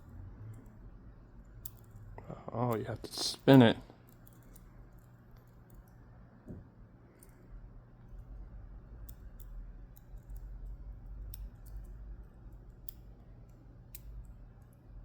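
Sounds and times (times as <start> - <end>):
low steady hum: 0.0 - 15.0
small metal lock parts clicking: 1.4 - 2.1, 4.0 - 6.0, 9.0 - 14.8.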